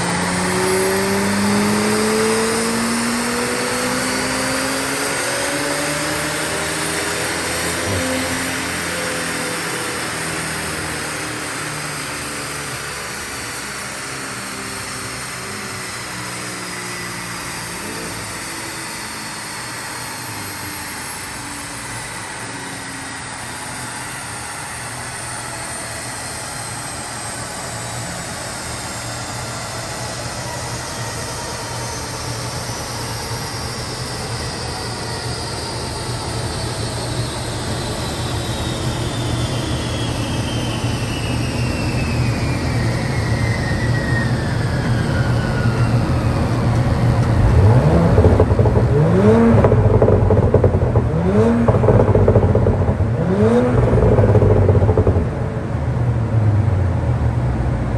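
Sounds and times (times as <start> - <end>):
high whine falling in pitch: 0.0 - 57.4
car engine running on dyno: 0.0 - 57.9
dyno rollers droning: 0.0 - 57.9.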